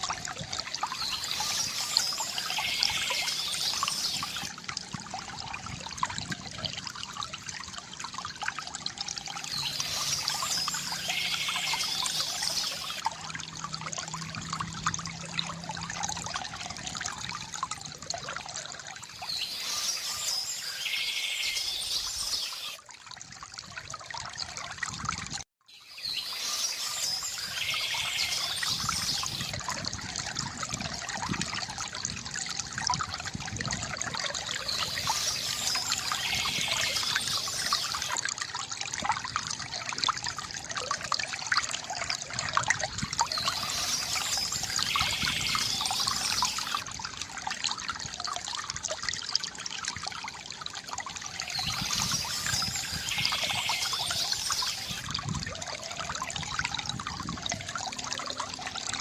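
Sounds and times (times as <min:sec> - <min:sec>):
water pouring into a basin: 0:00.0 - 0:59.0
birds chirping: 0:51.5 - 0:55.0.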